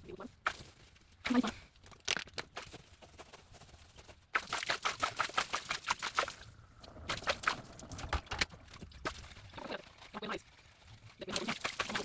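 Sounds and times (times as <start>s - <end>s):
rapid brushing strokes: 2.6s - 12.0s.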